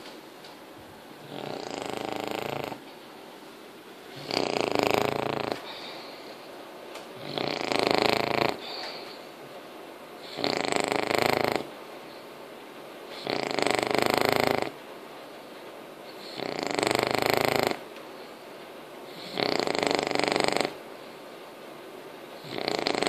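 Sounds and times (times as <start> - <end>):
puppy snoring: 1.1 - 2.9, 4.1 - 6.5, 7.2 - 9.3, 10.2 - 11.8, 13.1 - 14.8, 16.1 - 17.9, 19.0 - 20.8, 22.4 - 23.0
quiet breathing: 4.0 - 9.6.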